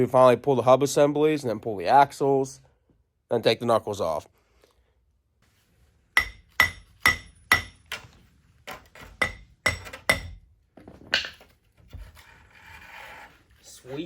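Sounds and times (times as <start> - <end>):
hammer striking steel: 6.2 - 8.0, 9.2 - 10.4.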